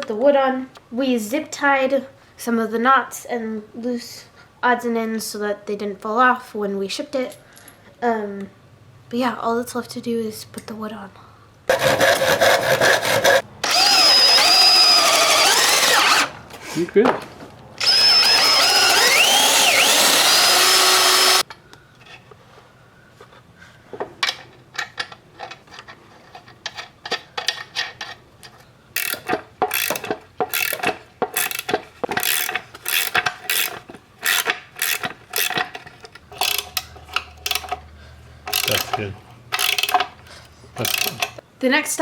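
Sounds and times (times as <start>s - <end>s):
hand ratchet clicking: 13.6s - 16.3s, 17.8s - 21.5s, 29.0s - 37.8s, 38.5s - 40.2s, 40.8s - 41.4s
power drill running: 13.6s - 16.4s, 17.8s - 21.4s.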